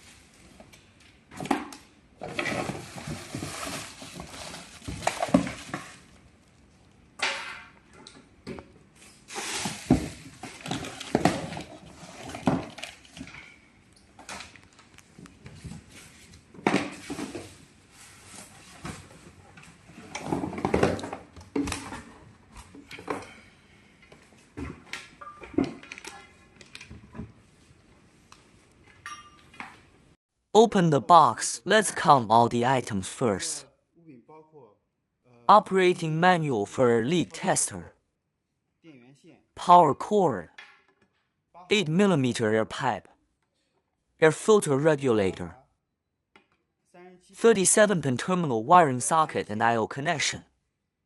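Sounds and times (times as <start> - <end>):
cardboard rustling and scraping: 2.3 - 6.1.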